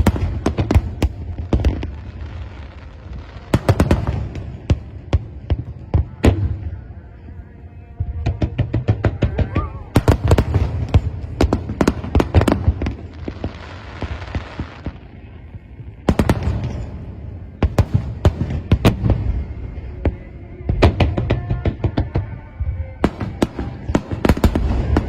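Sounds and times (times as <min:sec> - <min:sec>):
fireworks crackling hiss: 0:00.0 - 0:05.6, 0:10.0 - 0:20.3
fireworks bangs: 0:00.0 - 0:07.3, 0:08.0 - 0:25.0.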